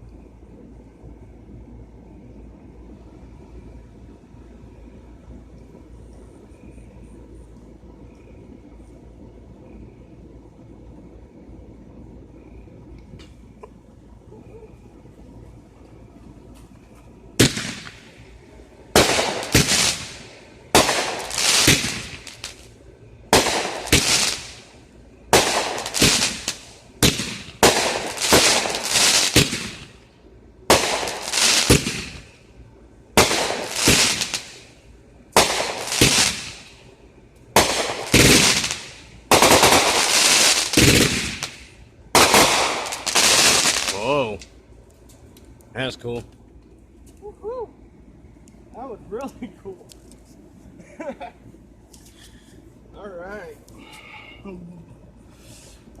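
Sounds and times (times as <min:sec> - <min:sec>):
firework cake bangs: 0:17.4 - 0:18.2, 0:18.9 - 0:22.6, 0:23.3 - 0:24.6, 0:25.3 - 0:30.0, 0:30.7 - 0:32.3, 0:33.2 - 0:34.7, 0:37.6 - 0:44.1.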